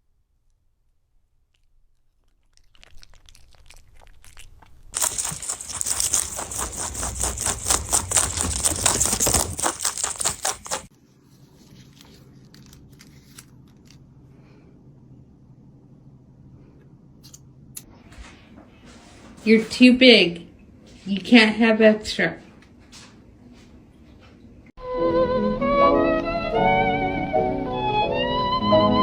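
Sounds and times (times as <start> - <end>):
fast scratchy tearing: 5.0 - 10.9.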